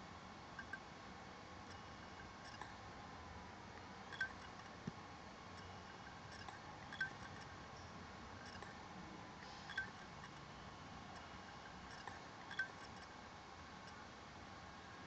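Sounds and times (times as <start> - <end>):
faint steady hum: 0.0 - 15.0
hard drive clicking: 0.6 - 0.8, 1.6 - 2.8, 3.8 - 7.6, 8.4 - 8.8, 9.4 - 13.2.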